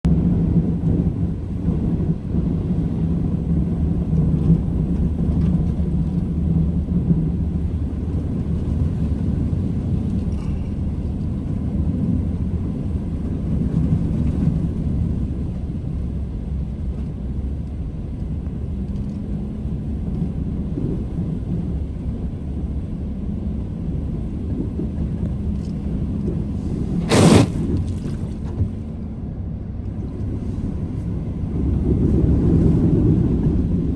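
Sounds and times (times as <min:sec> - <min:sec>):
loud burst of noise: 0:27.1 - 0:27.6.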